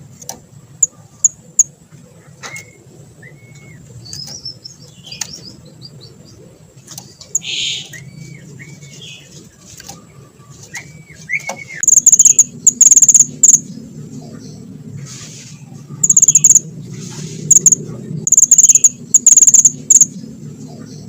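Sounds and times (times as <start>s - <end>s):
bird singing whistles and chirps: 2.4s - 6.0s, 7.1s - 9.3s, 10.6s - 13.6s, 16.0s - 16.6s, 17.5s - 20.1s
high-pitched bird trill: 7.3s - 9.3s, 10.7s - 13.7s, 16.0s - 16.6s, 17.5s - 20.1s
loud harsh bird note: 7.4s - 8.1s.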